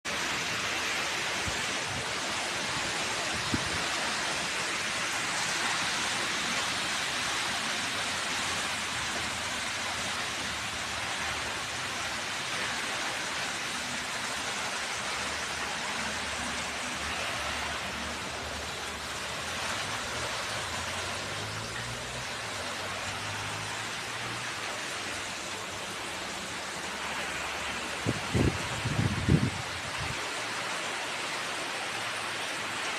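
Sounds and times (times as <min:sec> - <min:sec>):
heavy rain pouring: 0:00.0 - 0:32.9
strong wind: 0:00.6 - 0:06.0, 0:27.2 - 0:30.7.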